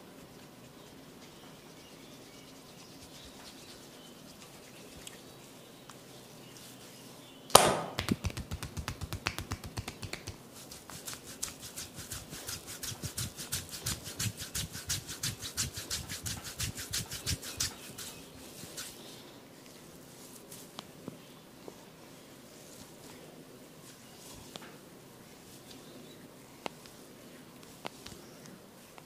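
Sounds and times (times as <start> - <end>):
hands slapping on body: 7.5 - 11.9.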